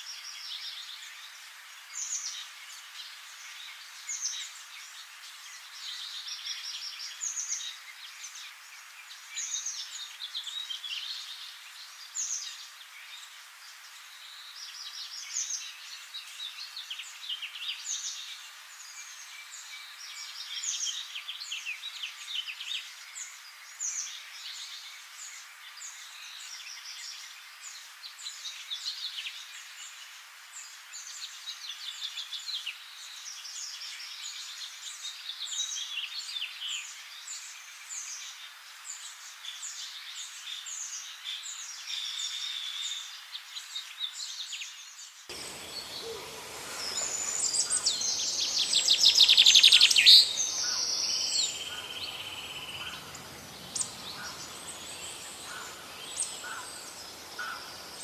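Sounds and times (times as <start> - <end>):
songbirds chirping: 0.0 - 58.0
rapid trilling bird song: 44.5 - 58.0.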